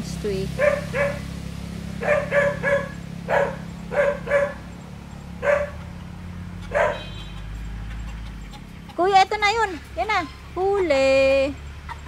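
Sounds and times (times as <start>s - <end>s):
dog barking: 0.6s - 1.3s, 2.0s - 4.7s, 5.4s - 5.9s, 6.7s - 7.4s.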